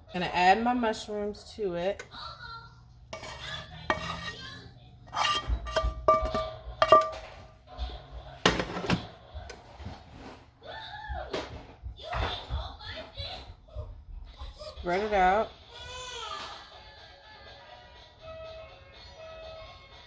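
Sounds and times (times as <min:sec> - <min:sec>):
metal utensil scraping cookware: 0:03.1 - 0:07.6.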